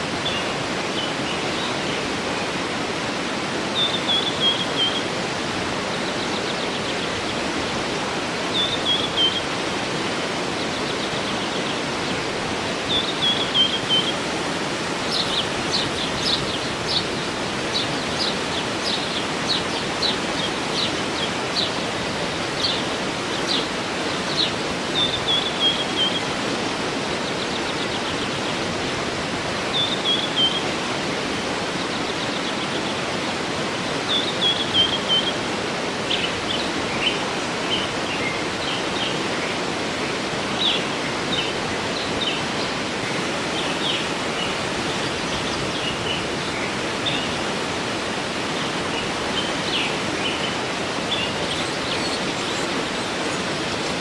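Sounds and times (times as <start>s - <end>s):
waterfall rushing: 0.0s - 54.0s
birds singing: 0.1s - 29.0s, 29.6s - 30.8s, 31.6s - 47.5s, 48.2s - 54.0s.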